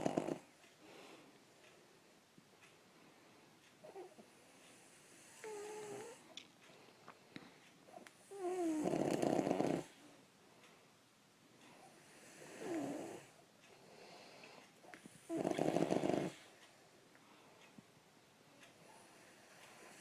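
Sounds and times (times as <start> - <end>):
man snoring: 0.0 - 0.5, 5.1 - 6.2, 8.3 - 9.9, 12.2 - 13.3, 15.2 - 16.4.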